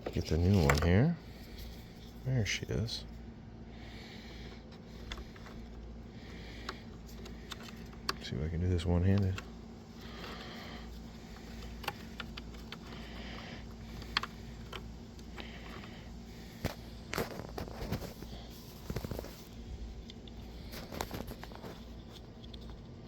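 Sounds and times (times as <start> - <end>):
steady low hum: 0.0 - 23.0
small plastic parts clicking: 4.5 - 8.3, 8.9 - 18.2.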